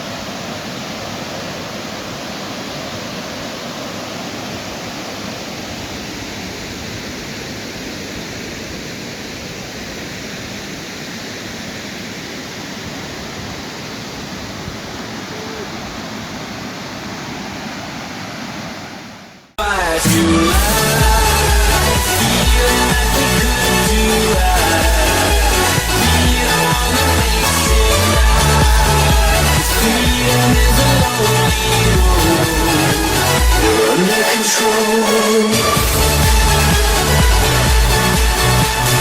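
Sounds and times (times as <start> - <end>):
waterfall rushing: 0.0 - 39.0
music: 19.6 - 39.0.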